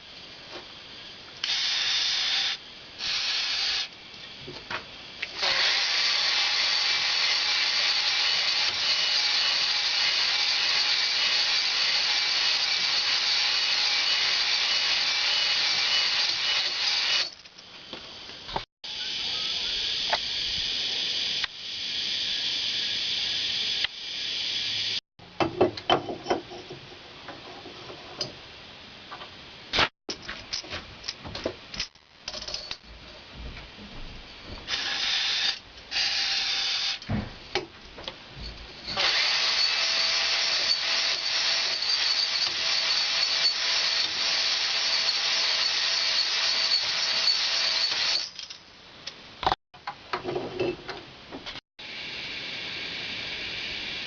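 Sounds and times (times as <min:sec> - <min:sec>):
electric drill spinning a hone: 0:01.4 - 0:03.9, 0:05.4 - 0:17.4, 0:34.7 - 0:37.0, 0:38.9 - 0:48.3.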